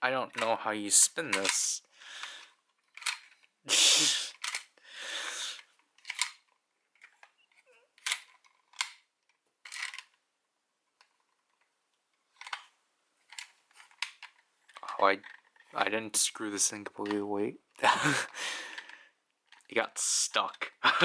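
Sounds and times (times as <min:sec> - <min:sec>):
plastic toy scraping: 0:02.4 - 0:03.5, 0:12.2 - 0:15.8.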